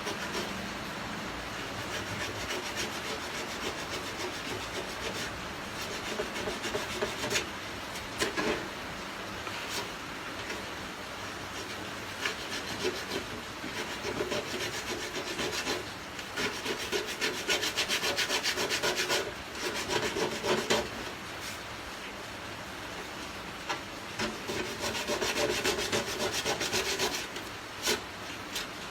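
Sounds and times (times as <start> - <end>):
sandpaper rubbing on metal: 0.0 - 0.5, 1.7 - 7.5, 11.5 - 21.6, 24.2 - 28.7.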